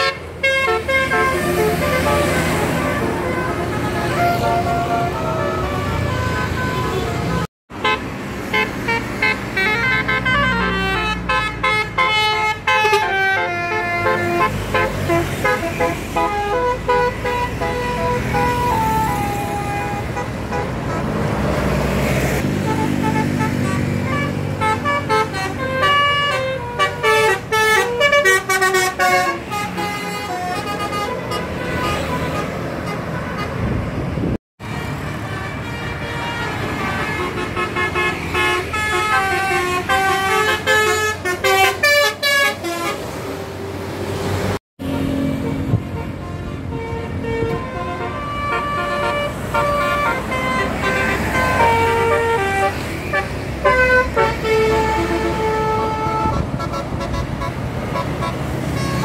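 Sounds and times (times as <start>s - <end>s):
multi-tone musical bus horns: 0.0s - 59.0s
traffic noise: 0.0s - 59.0s
vehicle engine noise: 0.0s - 59.0s.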